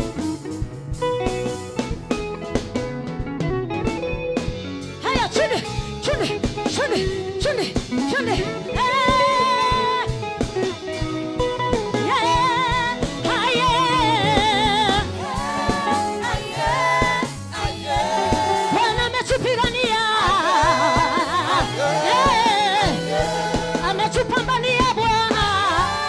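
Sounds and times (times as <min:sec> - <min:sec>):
bass line: 0:00.0 - 0:26.0
steady drum beat: 0:00.0 - 0:26.0
voices singing gospel song: 0:05.0 - 0:11.0, 0:11.9 - 0:26.0.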